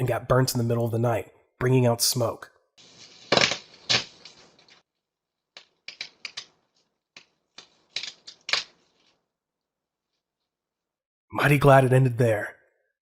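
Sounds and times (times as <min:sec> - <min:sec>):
electrical arcing crackles and pops: 0:02.8 - 0:04.9.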